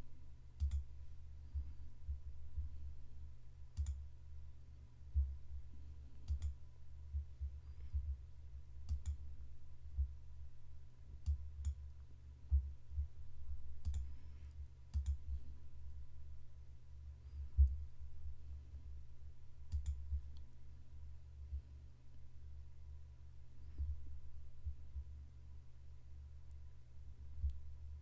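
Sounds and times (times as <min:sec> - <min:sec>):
computer mouse clicks: 0:00.6 - 0:00.8, 0:03.8 - 0:04.0, 0:06.2 - 0:06.6, 0:08.9 - 0:09.2, 0:13.8 - 0:14.1, 0:14.9 - 0:15.2, 0:19.7 - 0:20.5.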